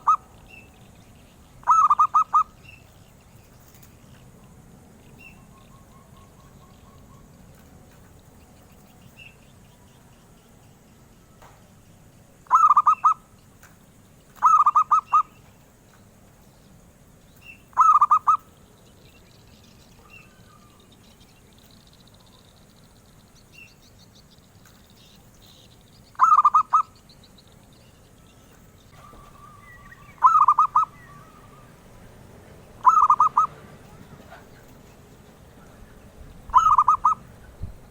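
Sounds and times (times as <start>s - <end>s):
faint high chirps: 0.0s - 37.7s
dove cooing: 1.5s - 2.6s, 12.4s - 13.3s, 14.4s - 15.4s, 17.7s - 18.5s, 26.2s - 26.9s, 28.9s - 37.9s.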